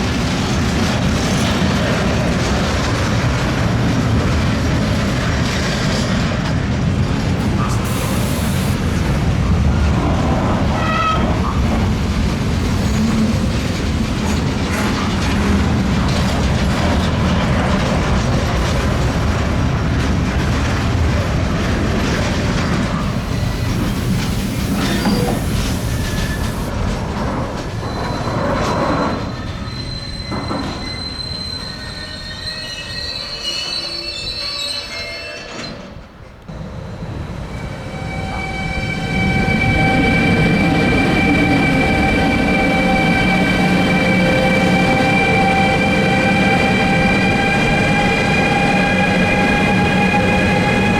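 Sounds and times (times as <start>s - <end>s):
freight train rumbling on rails: 0.0s - 50.9s
high-pitched wheel squeal: 23.1s - 26.7s, 37.6s - 50.9s.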